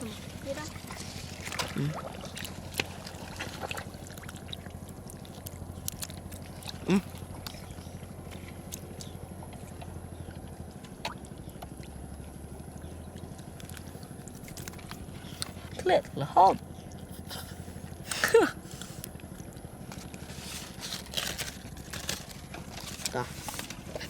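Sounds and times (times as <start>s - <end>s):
water trickling and gurgling: 0.0s - 17.1s
steady low hum: 0.0s - 24.0s.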